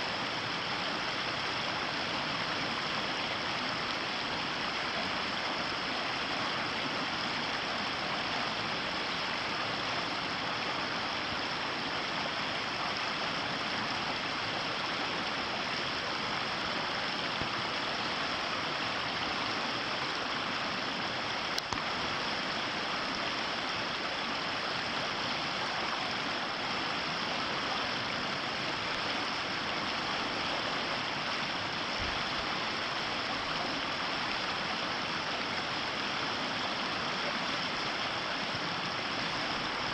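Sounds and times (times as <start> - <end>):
river water rushing: 0.0 - 39.9
small click: 21.5 - 21.9.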